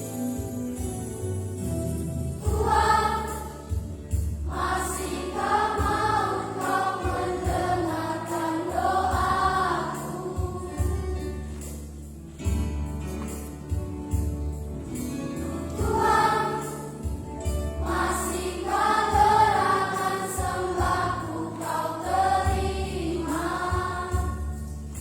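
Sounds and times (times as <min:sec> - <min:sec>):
instrumental accompaniment: 0:00.0 - 0:25.0
children's choir singing: 0:02.4 - 0:11.9, 0:15.7 - 0:25.0.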